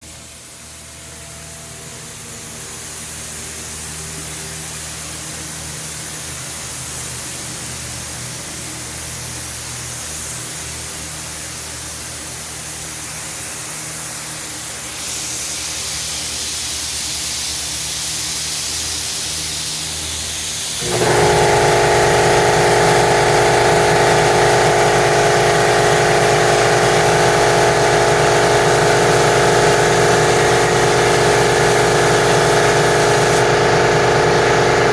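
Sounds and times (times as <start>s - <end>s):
steady hiss: 0.1s - 21.5s
paint sprayer motor humming: 20.7s - 34.9s.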